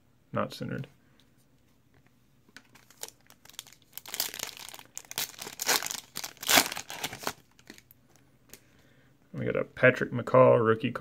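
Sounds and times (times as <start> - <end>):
wrapper crinkling and tearing: 2.7 - 7.9.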